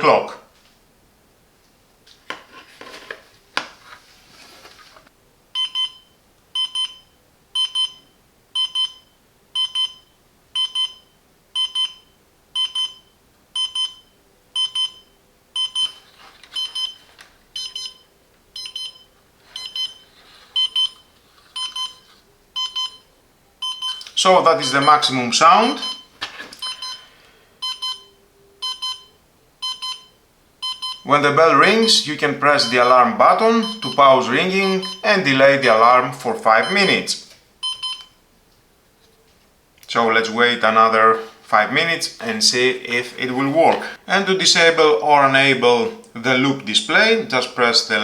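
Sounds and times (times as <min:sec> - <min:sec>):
alarm clock beeping: 0:05.6 - 0:16.0, 0:16.6 - 0:17.0, 0:17.6 - 0:38.1.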